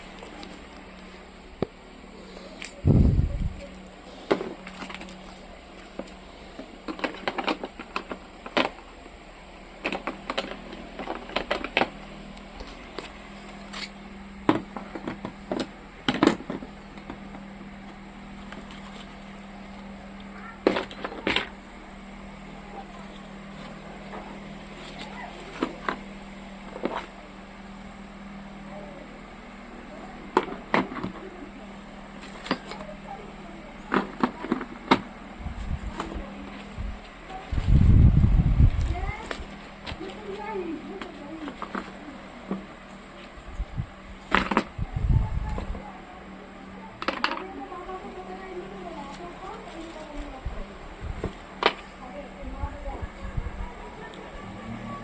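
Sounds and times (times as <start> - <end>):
steady low hum: 0.0 - 55.0
objects clicking and knocking: 47.0 - 47.6
drill and packaging handled: 49.0 - 50.4.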